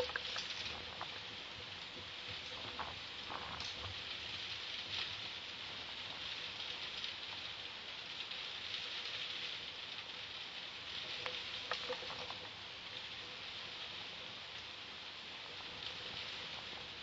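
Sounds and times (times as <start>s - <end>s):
raindrop splash ticks: 0.0s - 1.2s, 11.1s - 12.5s.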